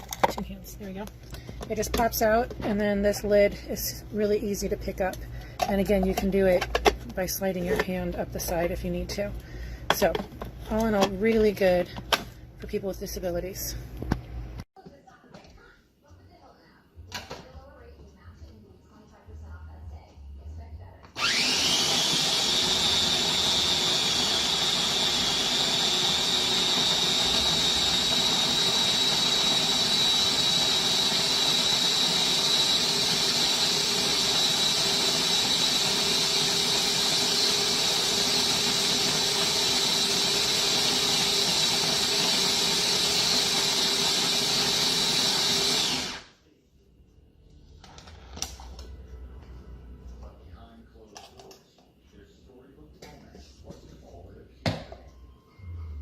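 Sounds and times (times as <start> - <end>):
coffee grinder motor whining: 21.2 - 46.4.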